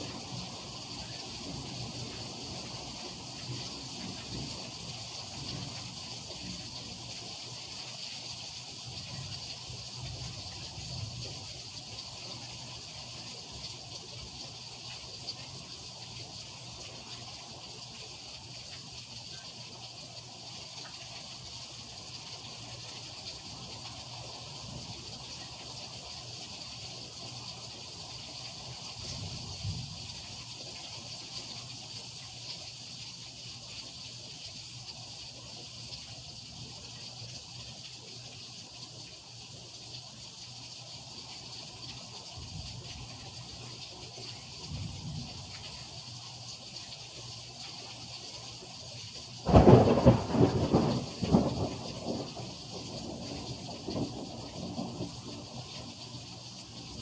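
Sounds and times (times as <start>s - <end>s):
heavy rain falling: 0.0s - 7.9s, 36.6s - 57.0s.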